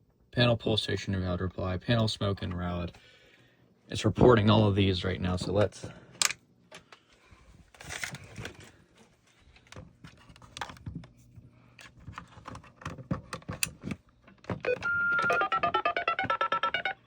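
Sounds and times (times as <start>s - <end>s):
hands handling wiring and hardware: 5.4s - 15.5s.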